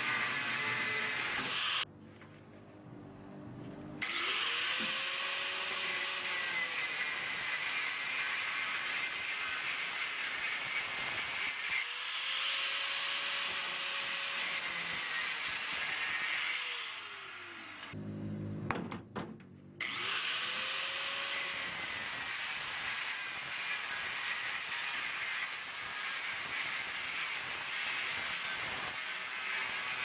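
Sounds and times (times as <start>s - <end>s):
power tool cutting metal: 0.0s - 1.9s, 4.0s - 18.0s, 19.8s - 30.0s.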